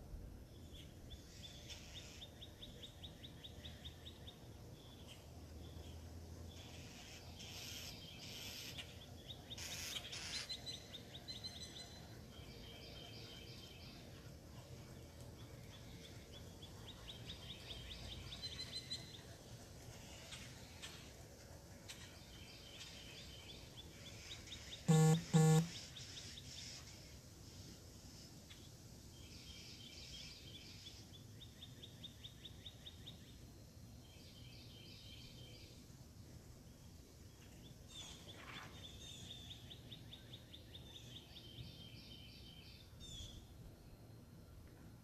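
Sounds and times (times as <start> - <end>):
birds chirping trills: 21.9 - 26.7
nasal double honk: 24.9 - 25.7.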